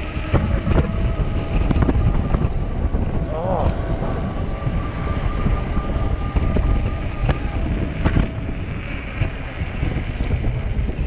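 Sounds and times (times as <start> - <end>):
electric motor whine: 0.0 - 11.0
wind buffeting microphone: 0.0 - 11.0.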